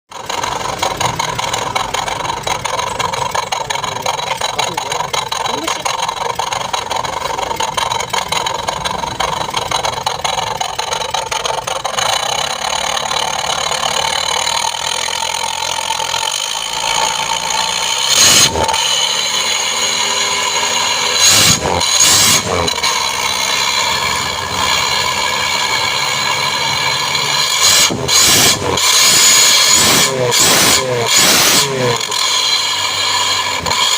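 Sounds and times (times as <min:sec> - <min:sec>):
motorcycle engine idling: 0:00.1 - 0:21.8.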